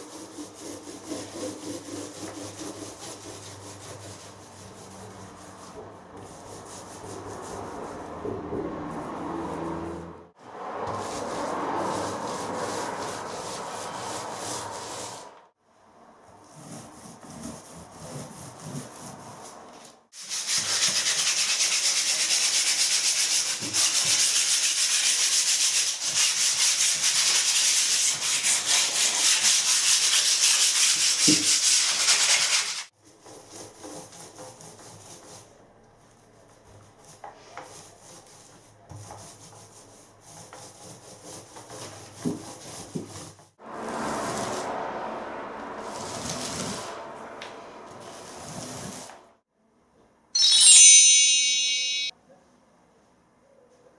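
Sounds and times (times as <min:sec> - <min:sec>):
sanding plaster hiss: 0:20.2 - 0:32.9.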